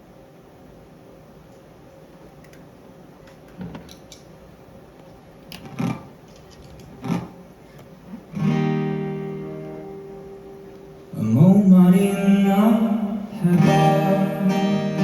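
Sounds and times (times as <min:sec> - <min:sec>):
guitar soft notes: 0:08.3 - 0:15.0
guitar chord ringing: 0:08.4 - 0:11.4, 0:12.3 - 0:15.0.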